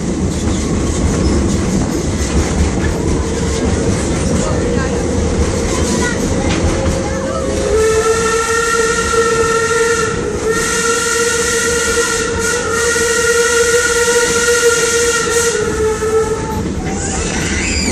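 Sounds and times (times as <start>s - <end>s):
moving train rumble: 0.0s - 17.9s
steam locomotive whistle: 7.5s - 17.9s.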